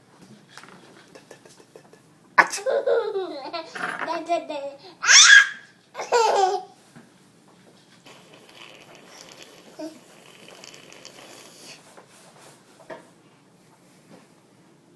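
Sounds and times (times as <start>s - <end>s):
child vocal burst: 4.8s - 5.6s, 9.1s - 10.6s.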